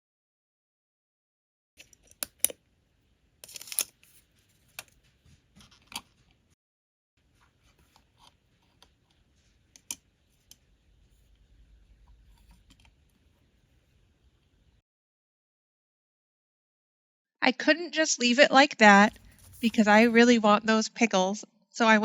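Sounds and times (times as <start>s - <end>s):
plastic toy parts clicking: 1.8s - 2.6s, 3.4s - 4.0s
packaging crinkling: 3.4s - 4.8s.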